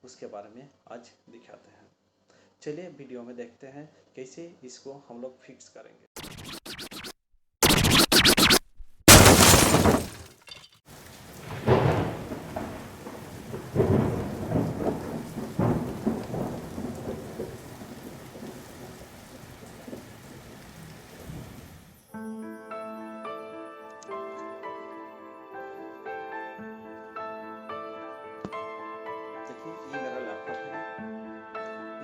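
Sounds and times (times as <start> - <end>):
rain hissing: 10.9 - 22.1
thunder rolling: 11.1 - 21.9.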